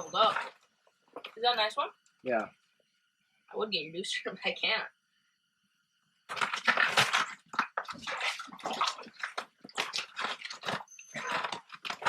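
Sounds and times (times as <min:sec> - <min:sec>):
fish thrashing and splashing in water: 0:00.0 - 0:01.3, 0:06.3 - 0:12.0.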